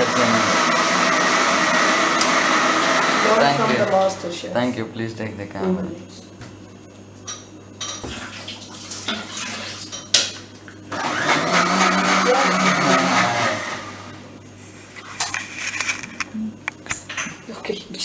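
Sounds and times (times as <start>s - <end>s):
electric blender running: 0.0s - 4.8s, 10.9s - 14.4s.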